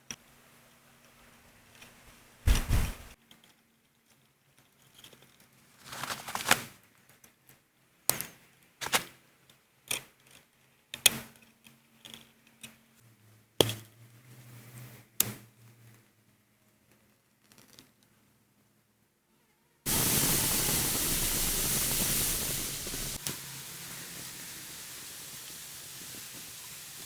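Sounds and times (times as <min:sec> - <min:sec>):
soft scraping: 0:02.5 - 0:03.2.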